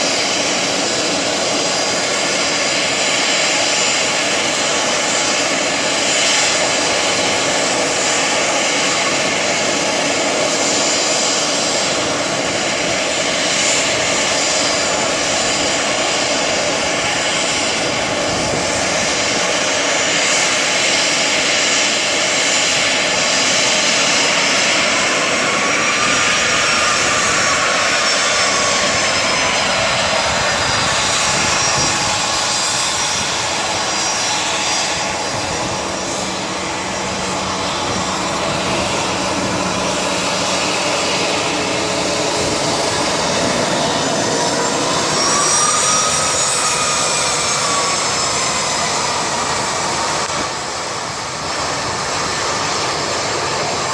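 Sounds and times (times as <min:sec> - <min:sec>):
jet engines running: 0:00.0 - 0:53.9.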